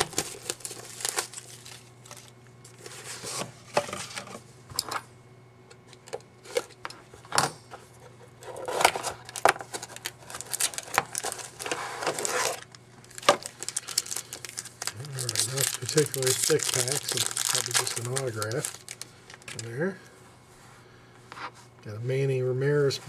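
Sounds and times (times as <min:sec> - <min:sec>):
card pack rustling: 0:00.0 - 0:03.4, 0:08.6 - 0:19.8.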